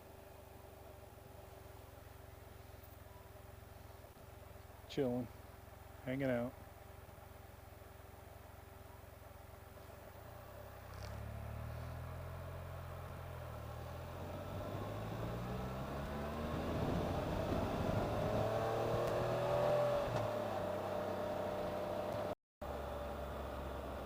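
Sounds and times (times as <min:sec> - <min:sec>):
motorcycle engine accelerating: 0:05.4 - 0:24.0.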